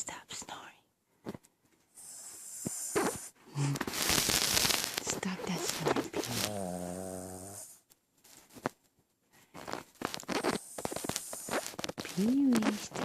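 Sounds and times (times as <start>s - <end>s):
dog snoring: 2.0s - 3.9s, 5.5s - 7.8s, 10.3s - 12.1s.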